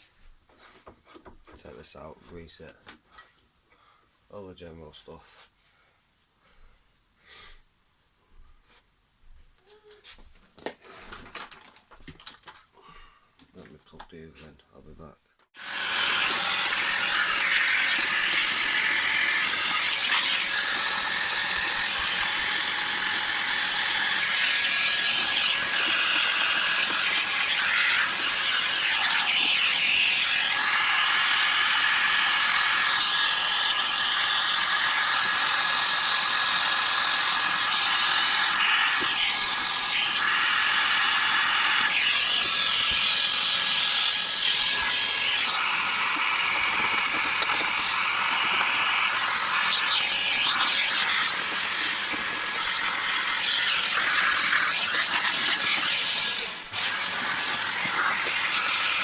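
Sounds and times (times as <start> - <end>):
vacuum cleaner running: 15.6 - 59.0.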